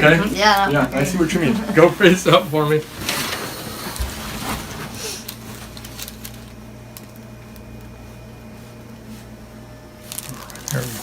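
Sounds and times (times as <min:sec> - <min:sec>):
steady low hum: 0:00.0 - 0:11.0
rustling and creaking on padded table: 0:02.9 - 0:06.4.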